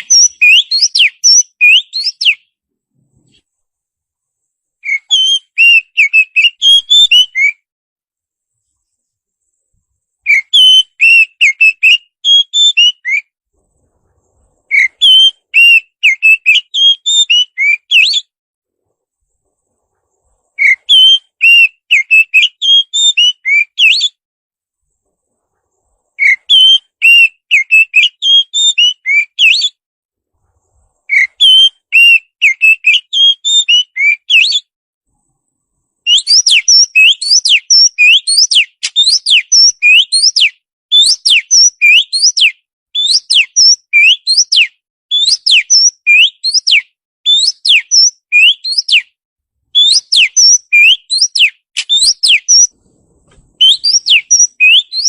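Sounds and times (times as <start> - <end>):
sharp upswept bird whistles: 0.0 - 2.5, 4.8 - 7.6, 8.6 - 13.3, 14.6 - 18.3, 20.6 - 24.2, 26.2 - 29.8, 31.1 - 34.7, 36.0 - 49.2, 49.8 - 55.0
songbird warbling chirps: 0.0 - 2.6, 4.8 - 7.6, 8.6 - 13.3, 14.6 - 18.3, 19.9 - 24.2, 31.0 - 34.6, 36.0 - 49.1, 53.4 - 55.0.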